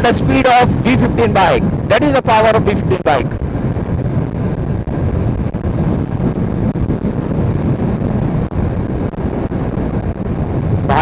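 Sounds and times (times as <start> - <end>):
wind rushing over microphone: 0.0 - 11.0
motorcycle engine running: 4.4 - 10.4.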